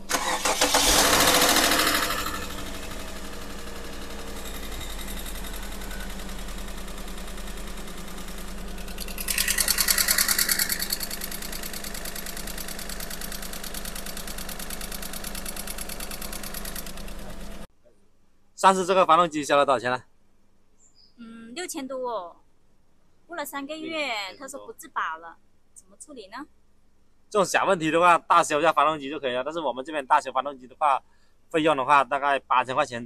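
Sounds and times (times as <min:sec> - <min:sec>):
car engine starting and idling: 0:00.0 - 0:17.7
engine ticking knock: 0:00.8 - 0:17.6.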